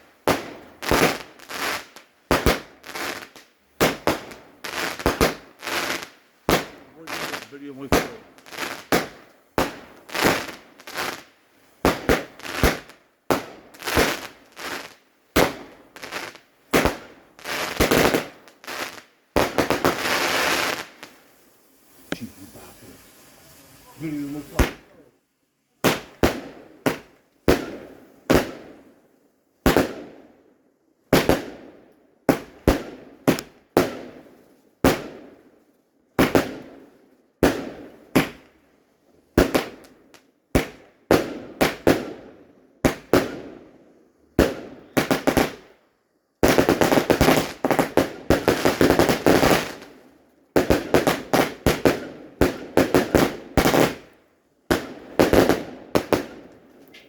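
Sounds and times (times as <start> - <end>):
fireworks banging: 0.0 - 25.0, 25.8 - 28.8, 46.4 - 50.0, 50.6 - 54.1, 54.7 - 57.0.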